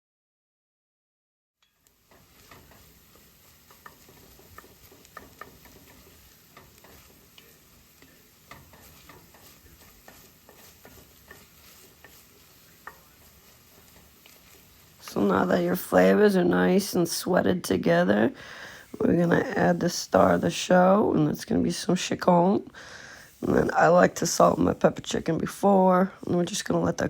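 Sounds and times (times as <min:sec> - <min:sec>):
vegetables sizzling in butter: 0:01.6 - 0:27.0.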